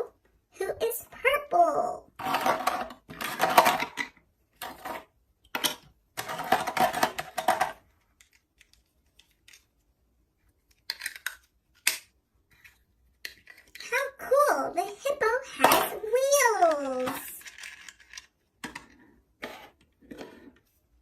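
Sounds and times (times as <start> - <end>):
plastic building blocks clicking: 5.4 - 13.9, 16.6 - 18.9.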